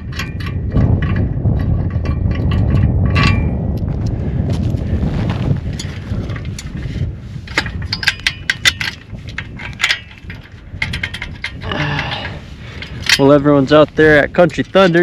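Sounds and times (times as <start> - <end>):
low rumbling wind-like noise: 0.0 - 15.0
light metallic clicks and clinks: 7.5 - 15.0.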